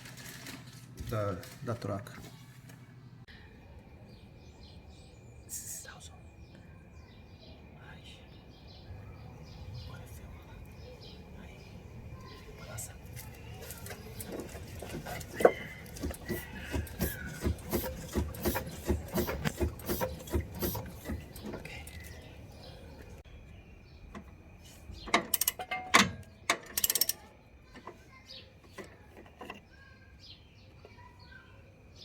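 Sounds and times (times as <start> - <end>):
clattering metal knocks: 25.0 - 27.2
ratchet wrench clicking: 25.2 - 27.3.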